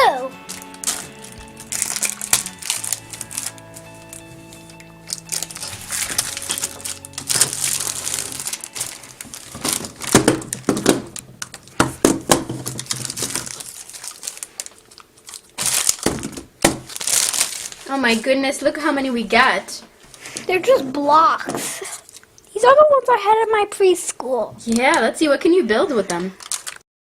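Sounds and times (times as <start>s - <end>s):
steady music tones: 0.0s - 11.7s
plastic packaging crinkling: 0.4s - 18.4s, 21.7s - 22.5s, 25.8s - 26.8s.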